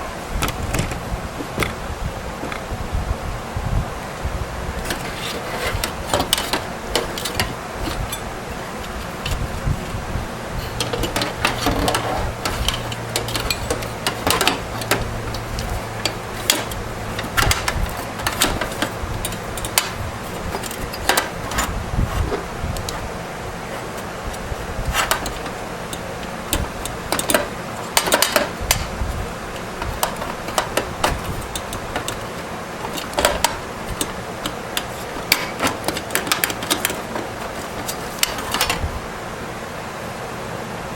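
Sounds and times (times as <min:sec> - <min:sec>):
steady low hum: 0:00.0 - 0:40.9
computer parts clicking and scraping: 0:04.8 - 0:39.0.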